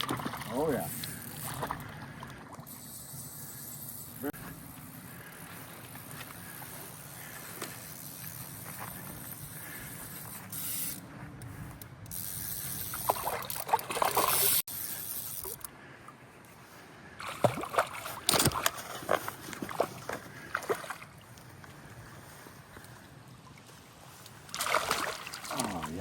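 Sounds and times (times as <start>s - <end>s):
fish splashing in water: 24.5s - 26.0s.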